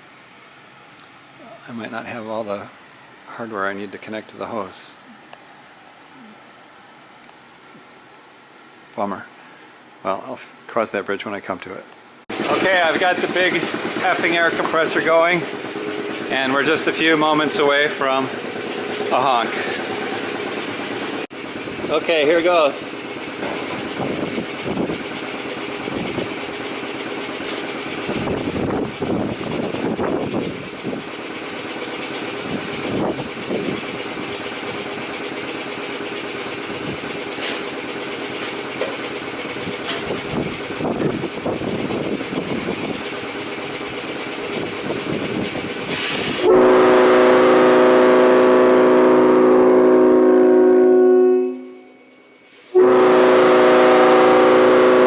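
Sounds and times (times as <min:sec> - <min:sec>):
rushing hissing noise: 0:44.5 - 0:46.5
locomotive horn chord: 0:46.4 - 0:52.1, 0:52.7 - 0:55.0.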